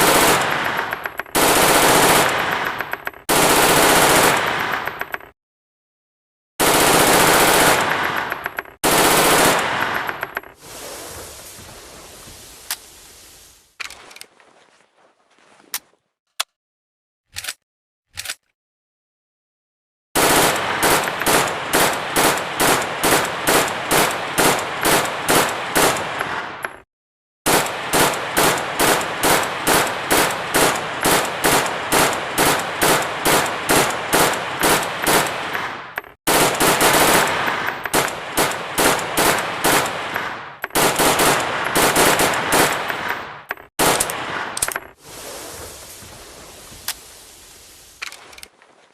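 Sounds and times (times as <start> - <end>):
machine gun shots: 0.0 - 5.0, 6.6 - 10.2, 20.2 - 26.6, 27.5 - 44.6.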